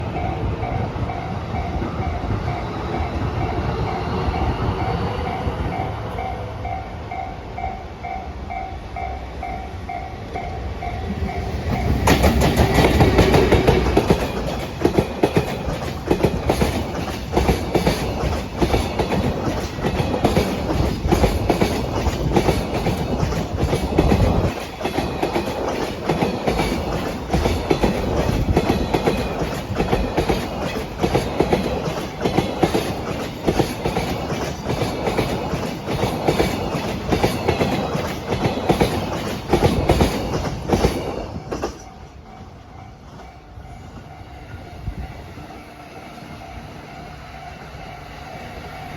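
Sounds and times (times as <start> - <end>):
freight train rolling past: 0.0 - 48.9.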